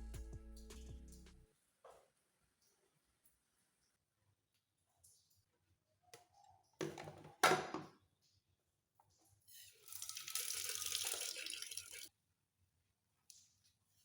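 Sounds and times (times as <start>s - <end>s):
tap water running into sink: 9.7s - 12.1s.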